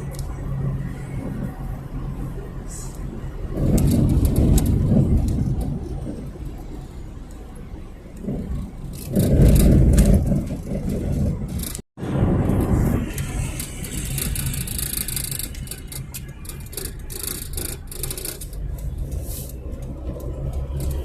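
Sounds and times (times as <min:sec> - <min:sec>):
car engine accelerating: 0:07.9 - 0:21.0.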